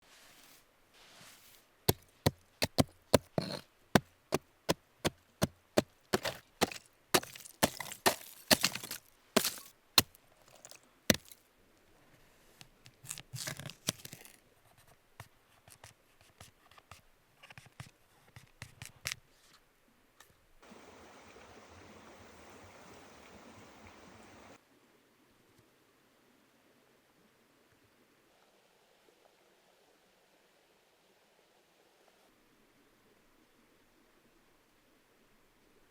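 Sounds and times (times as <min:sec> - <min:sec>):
knife scraping board: 0:01.2 - 0:03.6, 0:06.2 - 0:09.7
steady hiss: 0:20.6 - 0:24.6.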